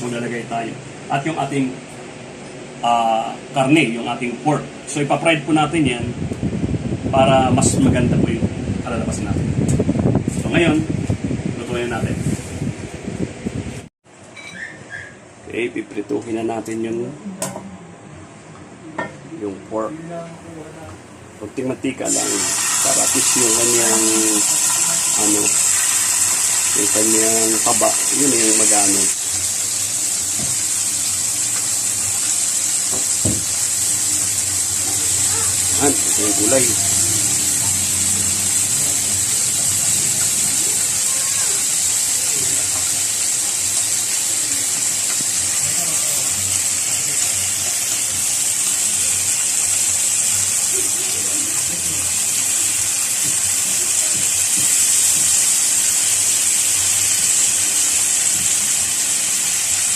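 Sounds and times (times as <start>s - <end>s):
meat sizzling in oil: 21.9s - 59.9s.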